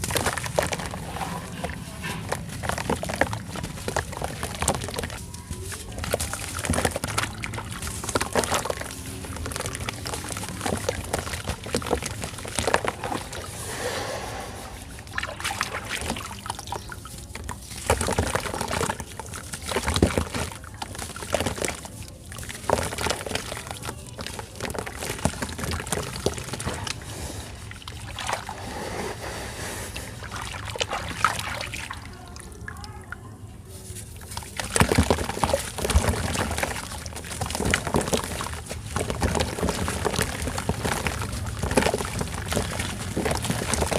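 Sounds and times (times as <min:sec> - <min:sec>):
sand crumbling and trickling: 0:33.9 - 0:43.9.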